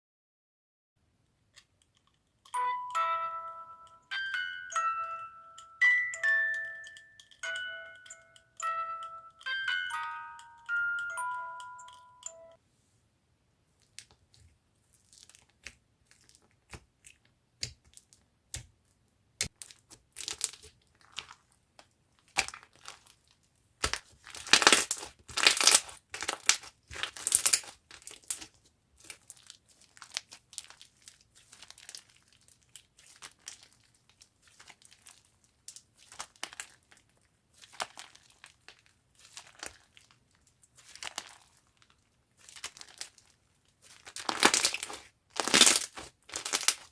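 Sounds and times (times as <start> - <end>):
slime squeezed crackling: 19.4 - 21.6, 22.2 - 46.9.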